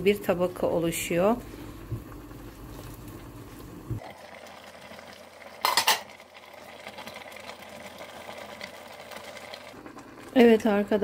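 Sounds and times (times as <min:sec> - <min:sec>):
cookware clattering: 0:05.6 - 0:06.2.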